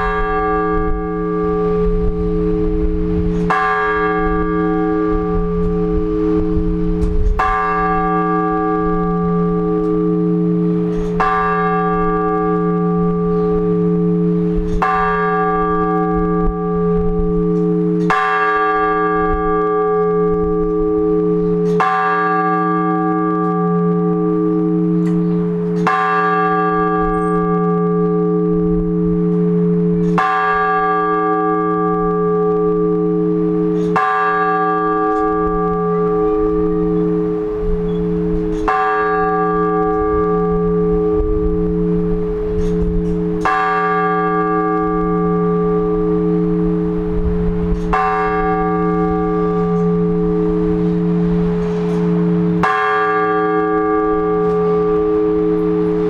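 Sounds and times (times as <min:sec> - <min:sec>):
large church bell tolling: 0:00.0 - 0:56.0.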